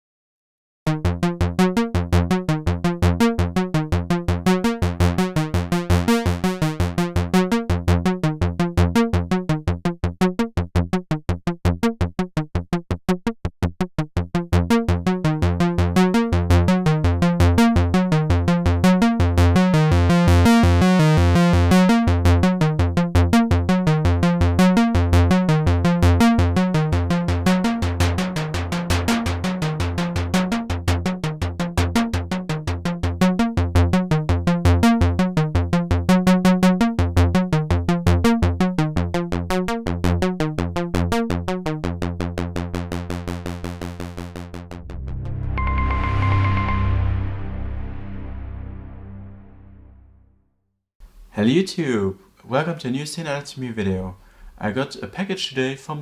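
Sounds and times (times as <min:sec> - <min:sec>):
synthesizer bass sequence: 0:00.9 - 0:09.6, 0:14.3 - 0:50.3.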